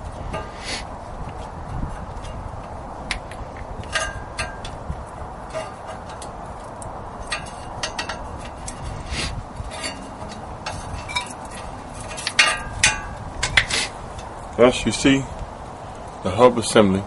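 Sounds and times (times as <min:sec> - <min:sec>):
loud metal clanks: 0:03.2 - 0:04.8, 0:05.4 - 0:09.0, 0:09.7 - 0:13.8
metal parts clinking: 0:09.7 - 0:13.7.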